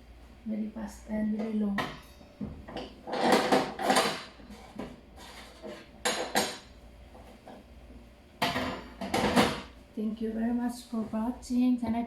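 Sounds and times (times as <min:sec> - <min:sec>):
metal kitchenware clattering: 0:02.7 - 0:06.7.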